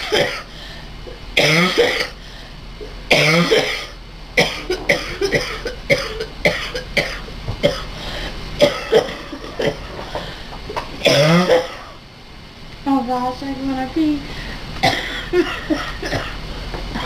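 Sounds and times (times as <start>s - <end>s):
man coughing with laughter: 0.0s - 0.5s, 3.1s - 7.9s, 8.6s - 10.0s, 14.8s - 16.4s.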